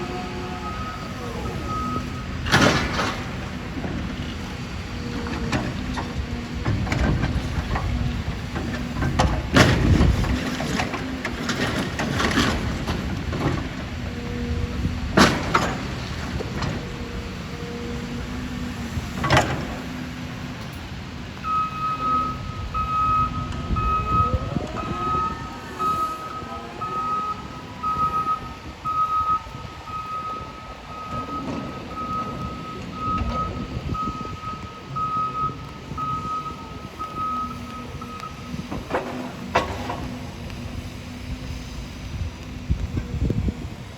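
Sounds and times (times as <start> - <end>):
reversing alarm beeping: 0.0 - 7.9, 21.4 - 39.7
diesel engine running: 0.0 - 43.9.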